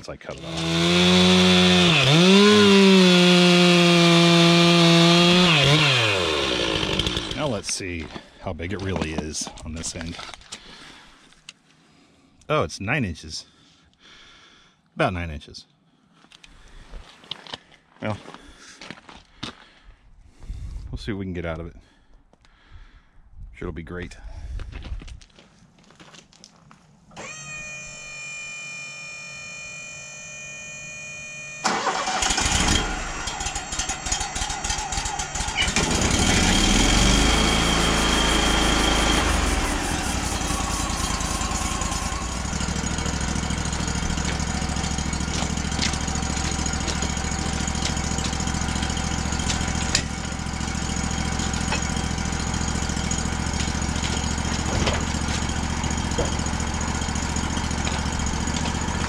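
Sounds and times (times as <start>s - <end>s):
engine cranking and idling: 0.1s - 10.4s, 31.6s - 59.0s
high multi-pitch tone: 27.2s - 31.9s.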